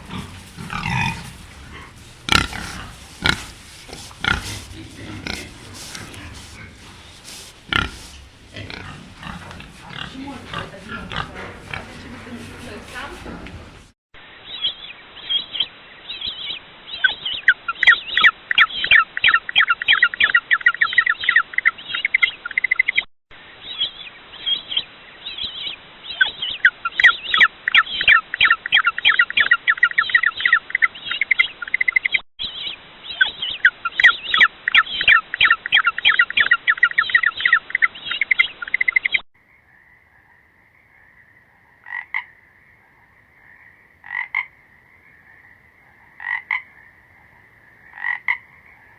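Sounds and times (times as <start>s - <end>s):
frog croaking: 0.0s - 12.5s, 34.0s - 48.9s.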